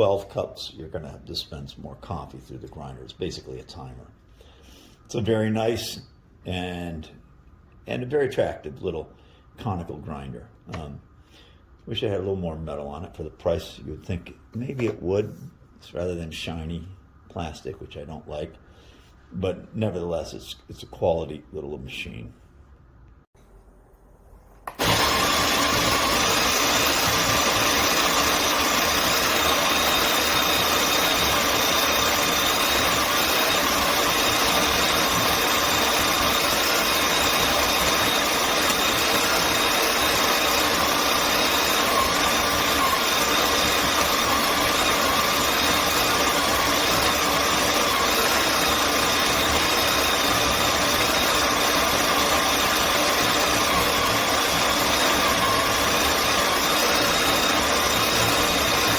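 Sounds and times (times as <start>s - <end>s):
electric coffee grinder whirring: 24.7s - 58.9s.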